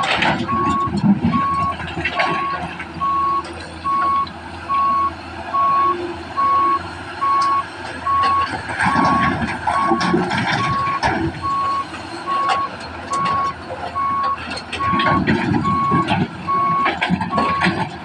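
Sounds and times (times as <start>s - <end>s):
diesel engine running: 0.0s - 18.0s
backup alarm beeping: 0.4s - 17.8s
clattering: 7.9s - 11.7s, 12.3s - 18.0s.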